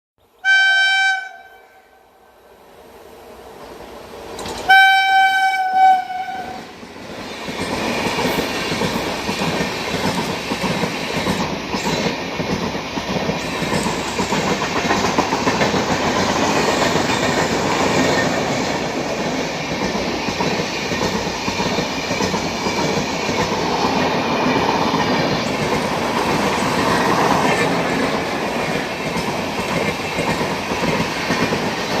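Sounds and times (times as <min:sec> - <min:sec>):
train horn blast: 0:00.4 - 0:02.2, 0:04.7 - 0:06.7
train wheels running on rails: 0:02.8 - 0:32.0.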